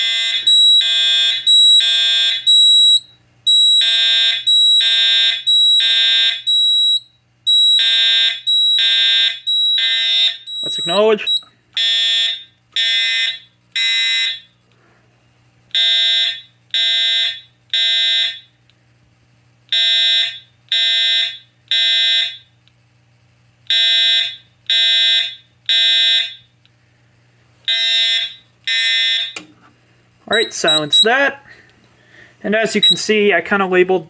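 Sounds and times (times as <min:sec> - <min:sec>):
fire alarm horn blasts: 0:00.0 - 0:14.5, 0:15.7 - 0:18.6, 0:19.7 - 0:22.6, 0:23.6 - 0:26.5, 0:27.6 - 0:29.4, 0:30.3 - 0:31.4, 0:32.5 - 0:33.2.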